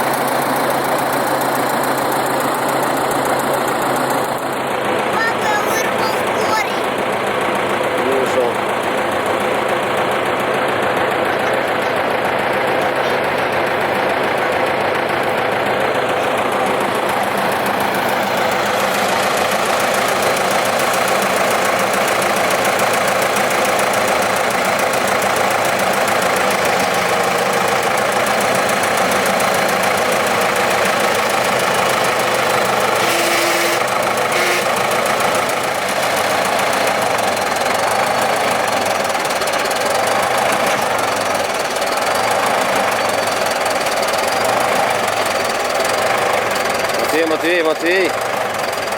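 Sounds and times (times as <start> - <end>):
diesel engine running: 0.0 - 48.9.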